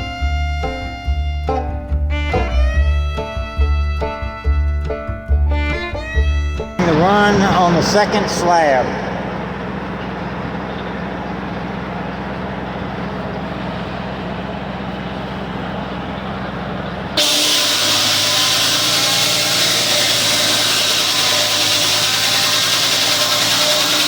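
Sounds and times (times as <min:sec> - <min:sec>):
sawmill engine humming: 0:00.0 - 0:24.0
loud hissing machine: 0:17.2 - 0:24.0.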